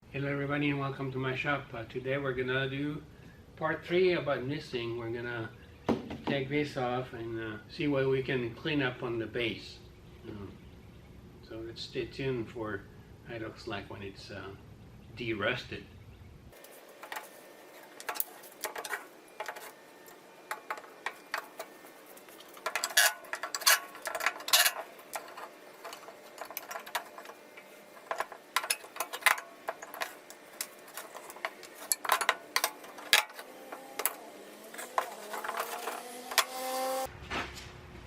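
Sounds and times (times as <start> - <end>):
metal tools clinking: 16.6 - 37.1.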